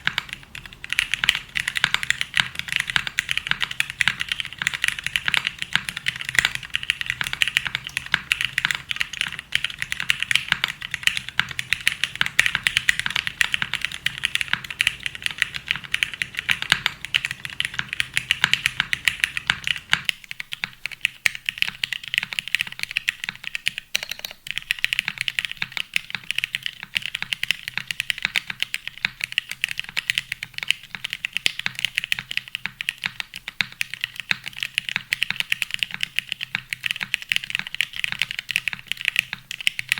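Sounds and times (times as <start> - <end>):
low steady hum: 0.0 - 20.1
rapid irregular clicking: 0.0 - 39.9.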